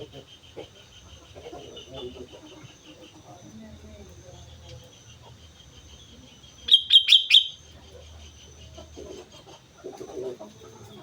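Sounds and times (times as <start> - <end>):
bird chirping: 5.9 - 8.7.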